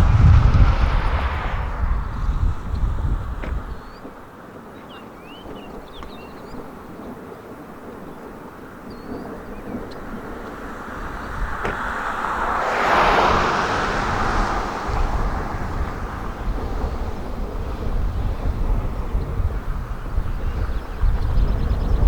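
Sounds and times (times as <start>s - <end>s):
vehicle passing: 0.0s - 3.8s, 10.0s - 18.9s
steady low rumble: 0.0s - 3.9s, 9.9s - 20.0s.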